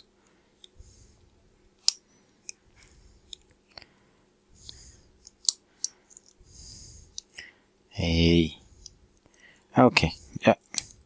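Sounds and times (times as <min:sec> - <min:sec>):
puffs of breath: 0:00.2 - 0:01.3, 0:02.1 - 0:07.8.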